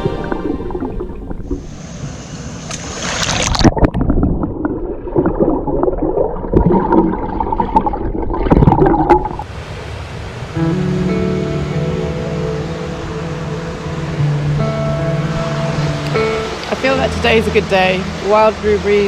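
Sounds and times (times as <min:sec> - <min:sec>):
music: 0:00.0 - 0:00.9, 0:10.6 - 0:19.0.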